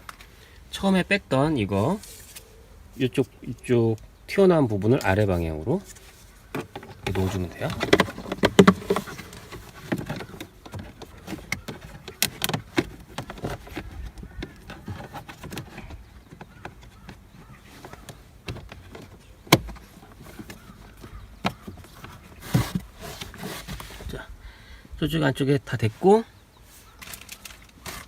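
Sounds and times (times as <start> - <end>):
plastic clicks and knocks: 6.5 - 23.9.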